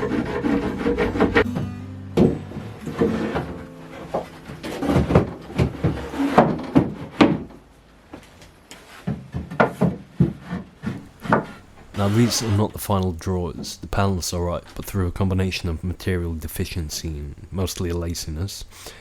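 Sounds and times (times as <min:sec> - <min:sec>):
wooden drawers scraping: 0:00.0 - 0:01.5, 0:02.8 - 0:07.7, 0:08.7 - 0:12.8
wooden drawers knocking: 0:04.2 - 0:07.6.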